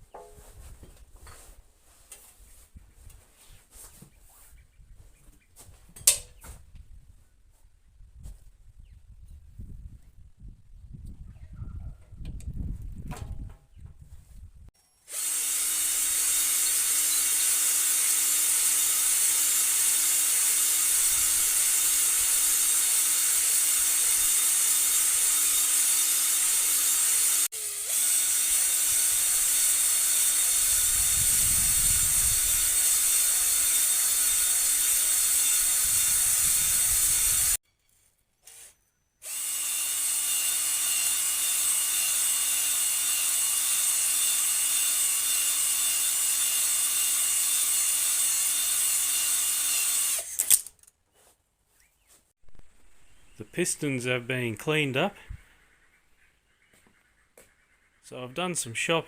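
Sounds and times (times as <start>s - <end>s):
power tool scrubbing metal: 15.1s - 37.6s.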